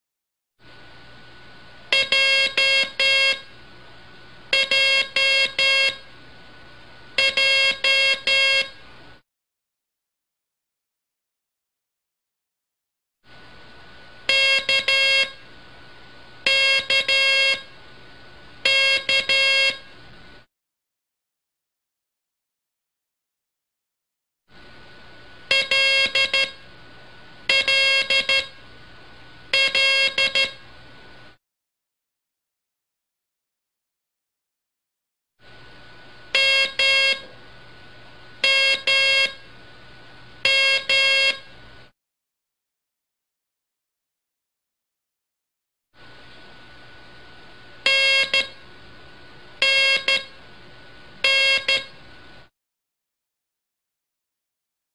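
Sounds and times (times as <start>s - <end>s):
buzzy morse code beeps: 1.9s - 3.5s, 4.5s - 6.1s, 7.2s - 8.8s, 14.3s - 15.4s, 18.7s - 19.8s, 25.5s - 26.6s, 27.5s - 28.6s, 29.6s - 30.6s, 36.4s - 37.3s, 38.4s - 39.4s, 40.4s - 41.5s, 47.8s - 48.6s, 49.6s - 50.4s, 51.2s - 52.0s.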